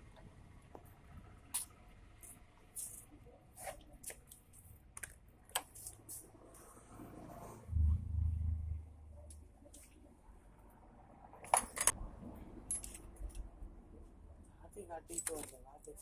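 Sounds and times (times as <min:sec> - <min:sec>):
low thud: 0:07.7 - 0:08.5
tools and metal parts clinking: 0:11.4 - 0:12.0, 0:12.7 - 0:13.4, 0:15.1 - 0:16.0.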